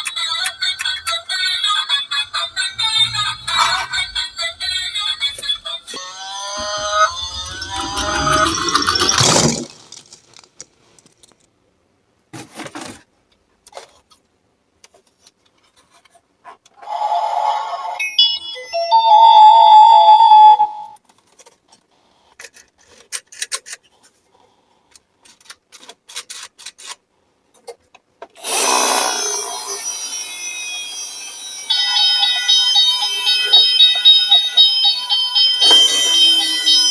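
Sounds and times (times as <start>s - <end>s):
toy electronic siren: 0.0s - 9.6s, 18.0s - 21.0s, 28.4s - 36.9s
toy cars rolling and rattling: 0.0s - 11.5s, 21.1s - 24.2s, 24.9s - 36.9s.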